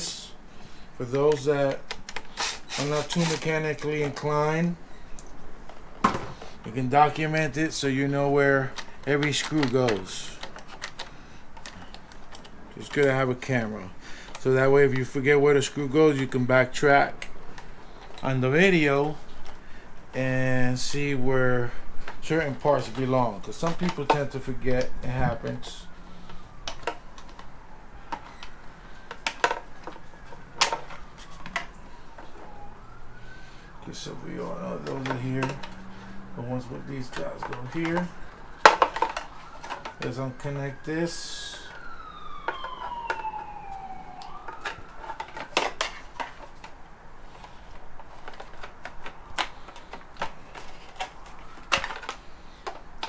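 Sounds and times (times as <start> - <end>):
plastic parts being handled: 0.0 - 53.0
falling siren-like tone: 20.4 - 47.0, 50.5 - 52.4
clicks and knocks on plastic: 37.1 - 40.1
clicks and knocks of hand work: 47.4 - 53.0.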